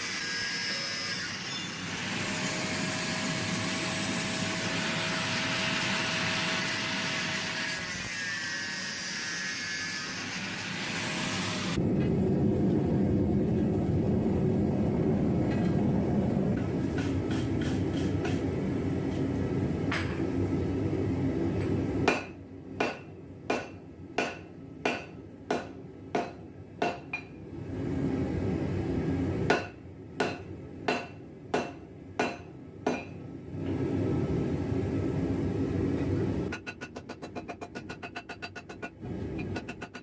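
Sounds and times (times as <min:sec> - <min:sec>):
gas forge burner roaring: 0:10.8 - 0:22.1, 0:27.5 - 0:29.5, 0:33.5 - 0:36.5.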